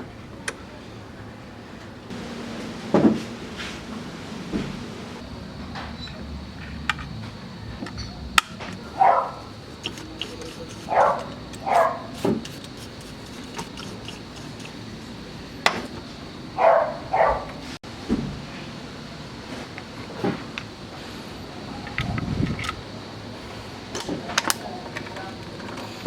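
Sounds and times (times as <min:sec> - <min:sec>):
dog barking: 0:08.9 - 0:09.5, 0:10.9 - 0:12.2, 0:16.6 - 0:17.6.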